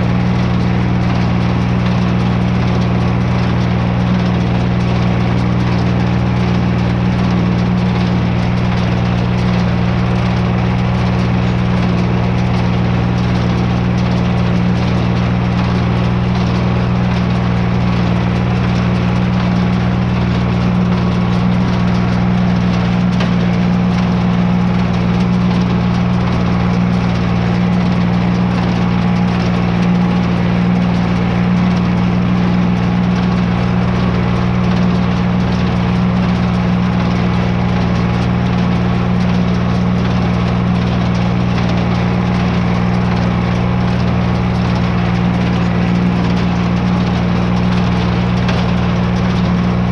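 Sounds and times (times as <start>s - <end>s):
tractor engine running: 0.0s - 49.9s.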